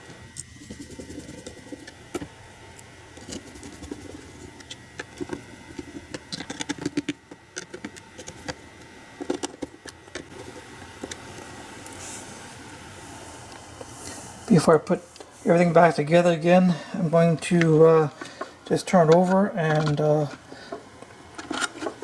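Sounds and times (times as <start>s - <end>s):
small hard objects clicking and rattling: 3.2s - 8.6s.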